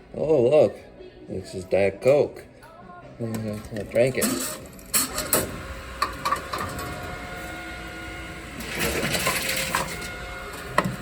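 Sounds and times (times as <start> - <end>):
steady mechanical hum: 0.0 - 11.0
machine whirring: 3.5 - 11.0.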